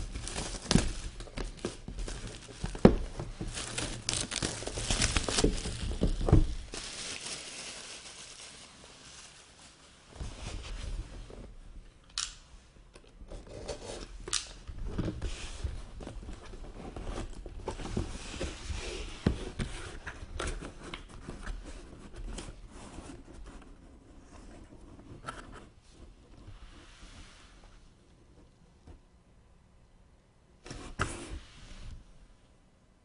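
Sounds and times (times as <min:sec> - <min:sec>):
cardboard rustling and scraping: 0:00.0 - 0:09.4, 0:10.1 - 0:11.6, 0:14.8 - 0:27.8, 0:30.6 - 0:32.1.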